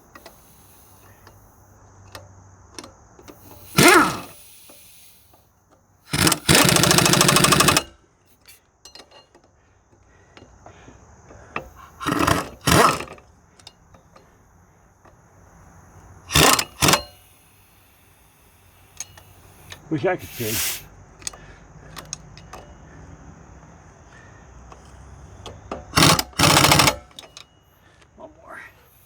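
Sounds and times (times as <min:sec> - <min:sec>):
impact wrench hammering: 0:03.3 - 0:04.3, 0:06.1 - 0:07.9, 0:11.6 - 0:14.2, 0:16.3 - 0:17.3, 0:25.4 - 0:27.4.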